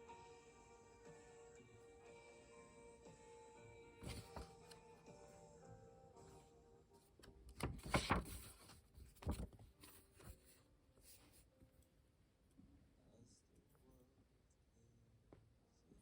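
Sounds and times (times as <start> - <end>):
music: 0.0 - 8.5
paper rustling: 4.0 - 4.8, 7.2 - 11.4.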